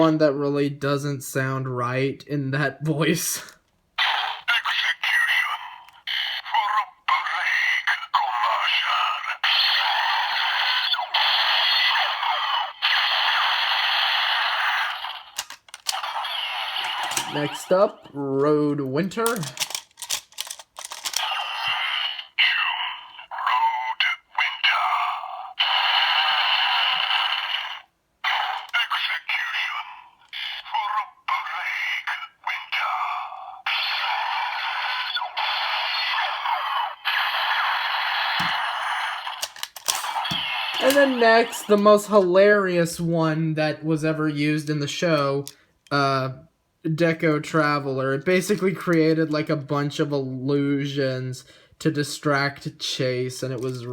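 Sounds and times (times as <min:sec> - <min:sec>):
tinny electronic toy sound effect: 0:04.0 - 0:43.1.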